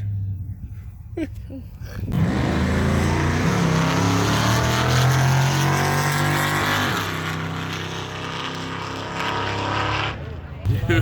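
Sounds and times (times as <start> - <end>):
car engine revving: 2.1 - 10.8.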